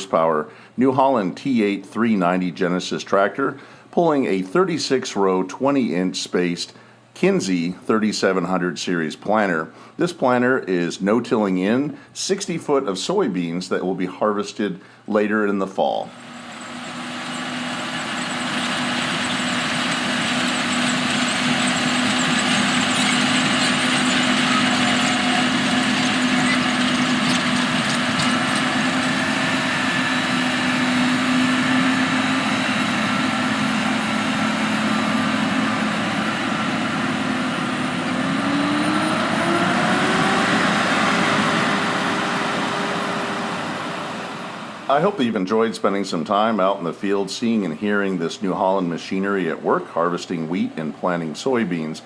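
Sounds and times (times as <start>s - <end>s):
tractor engine running: 16.2s - 45.1s.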